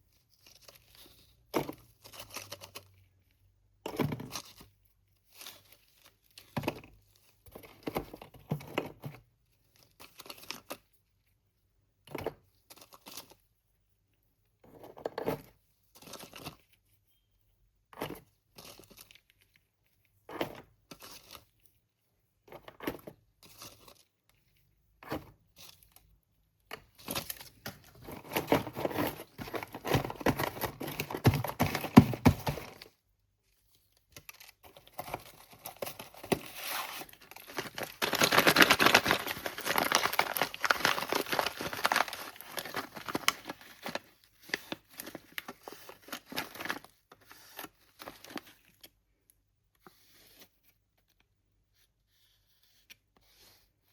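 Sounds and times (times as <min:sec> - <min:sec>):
packaging rustling: 0:27.0 - 0:32.9, 0:34.2 - 0:48.9
packaging crackling: 0:34.2 - 0:48.4.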